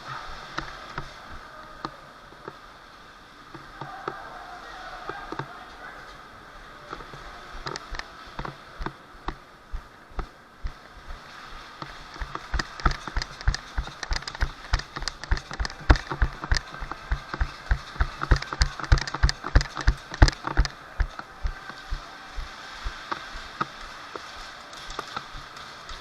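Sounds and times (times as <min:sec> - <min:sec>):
footsteps: 0:06.9 - 0:26.0
gear knocking against body: 0:12.0 - 0:21.6.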